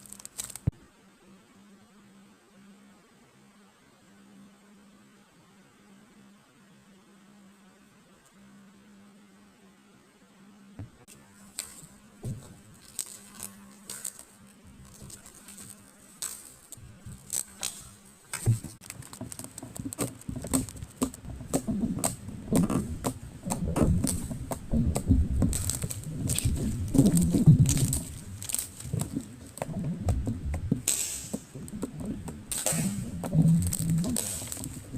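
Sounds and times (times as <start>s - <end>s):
sticky clicks and pops: 0.0s - 0.7s, 14.9s - 34.9s
slime being squished by hand: 11.5s - 34.9s.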